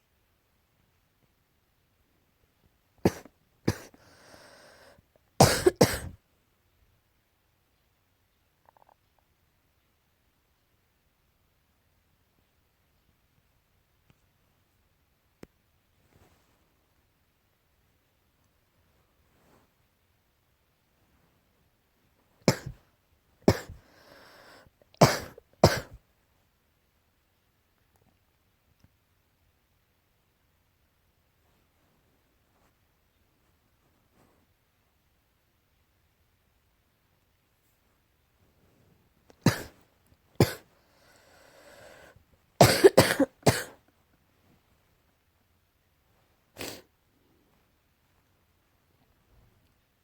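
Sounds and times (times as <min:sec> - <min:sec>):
person coughing: 0:03.1 - 0:04.7, 0:05.4 - 0:06.2, 0:22.5 - 0:22.8, 0:23.5 - 0:26.0, 0:39.5 - 0:39.8, 0:40.4 - 0:40.6, 0:42.6 - 0:43.8
drawn-in breath: 0:03.8 - 0:05.0, 0:23.6 - 0:24.7, 0:40.8 - 0:42.2.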